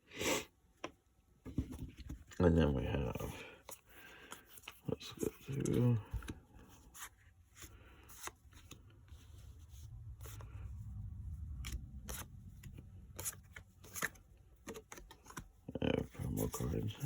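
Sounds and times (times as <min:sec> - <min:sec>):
low rumble of handling: 0:05.5 - 0:17.0.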